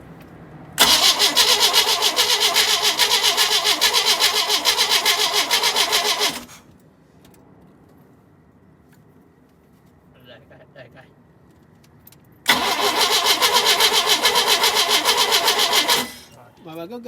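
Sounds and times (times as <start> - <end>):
starter cranking engine: 0.8 - 6.6, 12.5 - 16.7.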